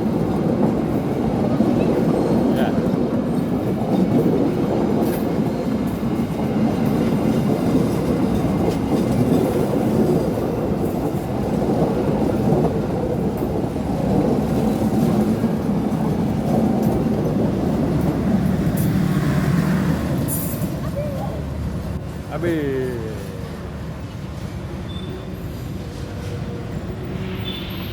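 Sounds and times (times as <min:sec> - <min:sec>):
train wheels rumbling on rails: 0:00.0 - 0:27.9.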